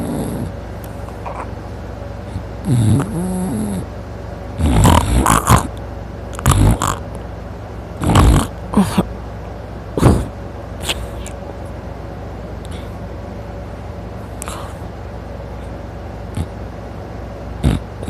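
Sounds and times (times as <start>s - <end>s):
man snoring loudly: 0.0s - 0.5s, 2.6s - 3.9s, 4.6s - 5.7s, 6.4s - 7.0s, 8.0s - 9.0s, 17.6s - 18.0s.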